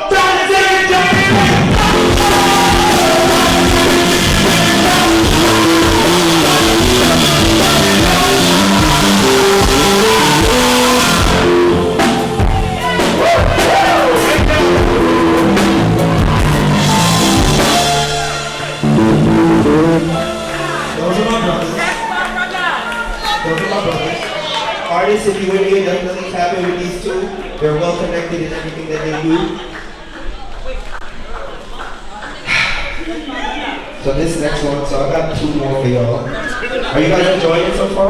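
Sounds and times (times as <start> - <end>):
live band playing: 1.0 - 24.9
faint vocal: 1.2 - 21.0.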